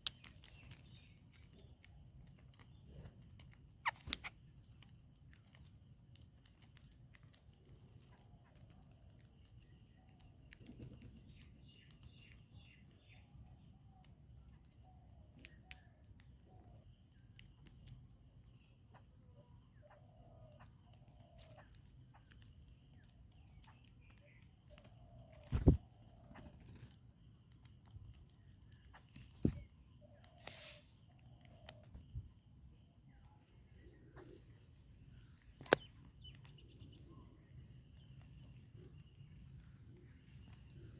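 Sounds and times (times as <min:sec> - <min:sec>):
birds calling: 0:02.7 - 0:04.7, 0:22.9 - 0:27.0, 0:33.1 - 0:40.9.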